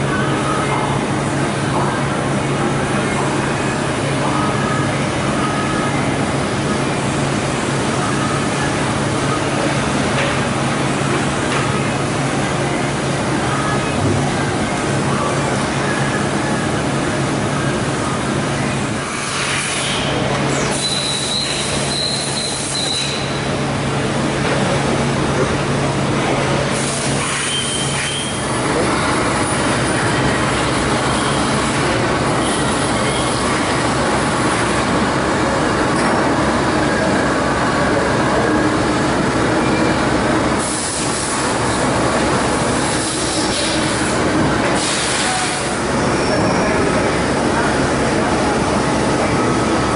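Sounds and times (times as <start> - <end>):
lathe machine running: 0.0 - 49.9
high thin squeal: 19.3 - 23.4, 26.8 - 28.5.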